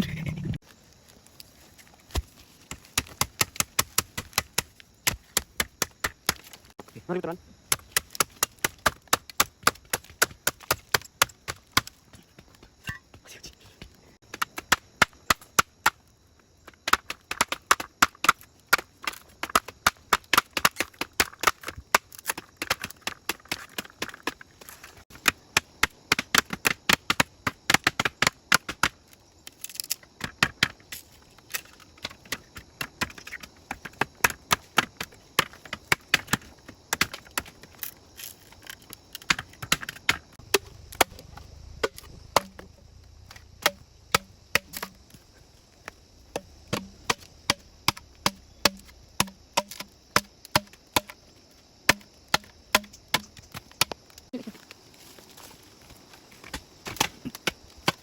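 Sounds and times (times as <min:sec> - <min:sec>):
blade chopping bamboo: 0:02.1 - 0:06.7, 0:07.7 - 0:12.0, 0:38.5 - 0:42.7, 0:43.6 - 0:45.0, 0:46.4 - 0:51.2, 0:51.9 - 0:54.0.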